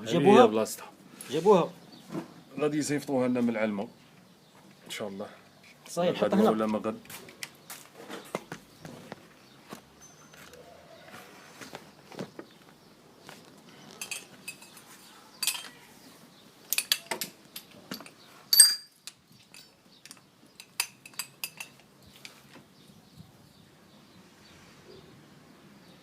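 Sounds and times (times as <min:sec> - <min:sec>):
metal tools clinking and clanking: 0:14.0 - 0:15.8, 0:16.7 - 0:22.4.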